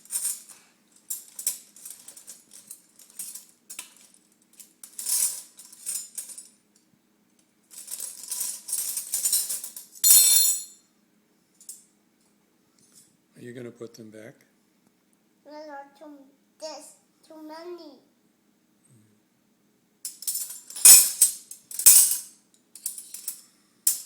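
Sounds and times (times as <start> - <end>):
metal spoons clattering: 7.8 - 10.7, 20.1 - 24.0.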